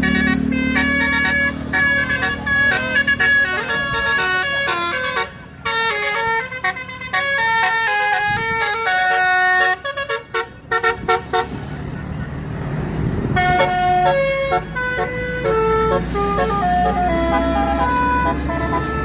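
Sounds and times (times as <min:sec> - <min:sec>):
bus horn playing tune: 0:00.0 - 0:12.1, 0:13.2 - 0:19.0.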